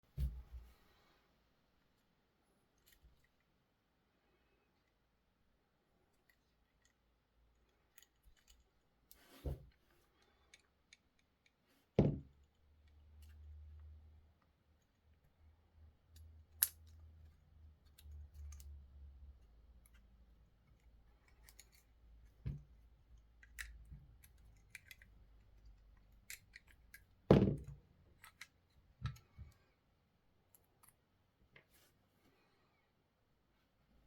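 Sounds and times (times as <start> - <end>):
dull knock: 12.0 - 12.3.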